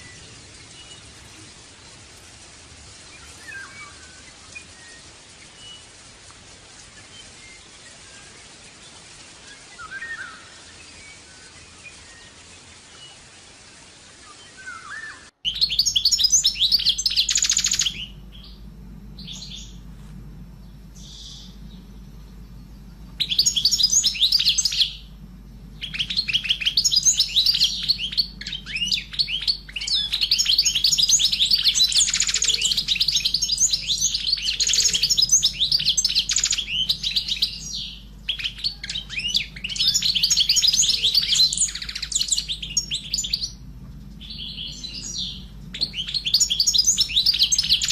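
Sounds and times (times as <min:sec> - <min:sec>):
low steady hum: 0:00.0 - 0:47.9
canary singing trills and chirps: 0:14.4 - 0:47.9.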